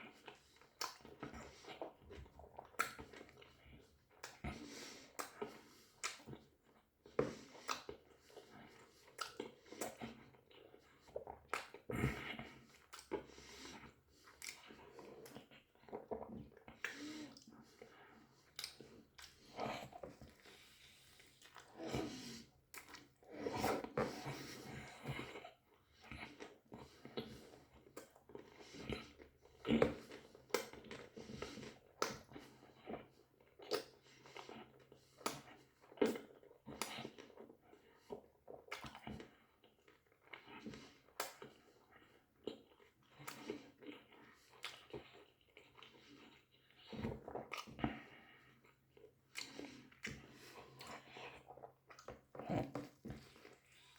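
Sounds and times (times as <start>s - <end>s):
person chewing and crunching: 38.1s - 53.9s.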